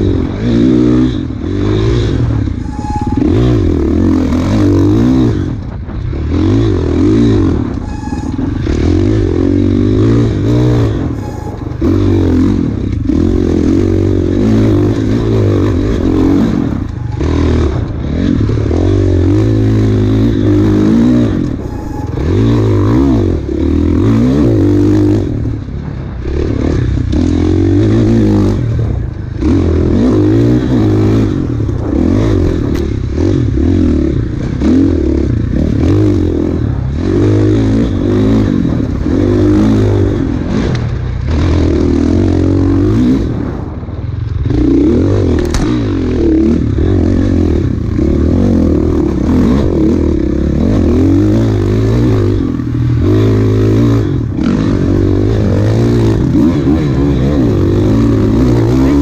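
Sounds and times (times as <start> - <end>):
dirt bike engine revving: 0.0 - 59.0.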